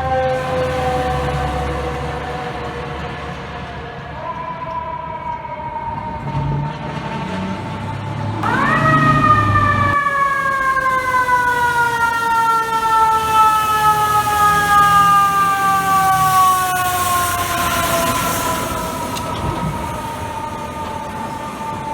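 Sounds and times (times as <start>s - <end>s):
fire truck siren winding: 0.0s - 6.9s, 7.8s - 21.9s.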